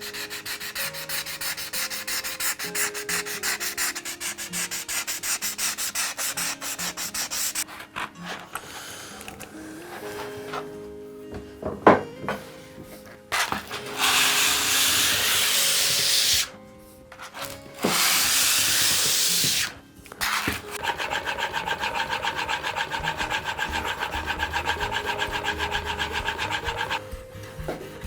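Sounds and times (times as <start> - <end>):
fast rhythmic rubbing: 0.0 - 8.4, 17.9 - 28.0
hissing bursts: 13.7 - 16.5, 17.8 - 21.2.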